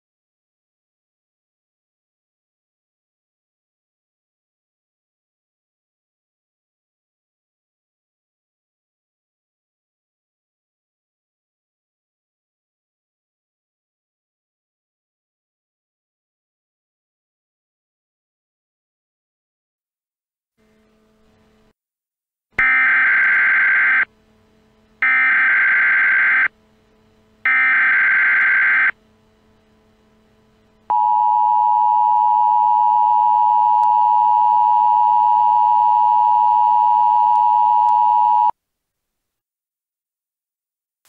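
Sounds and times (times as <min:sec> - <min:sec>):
two-tone attention signal: 0:22.6 - 0:24.1, 0:27.5 - 0:29.0, 0:30.9 - 0:38.5.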